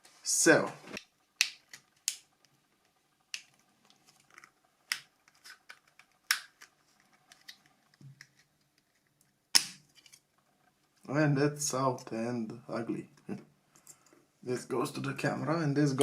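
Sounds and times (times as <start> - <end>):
plastic clicks and snaps: 0.9 - 10.2.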